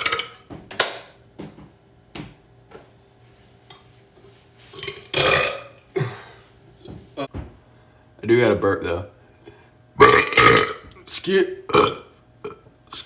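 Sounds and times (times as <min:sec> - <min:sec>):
boy burping: 0:10.0 - 0:10.8, 0:11.7 - 0:12.6.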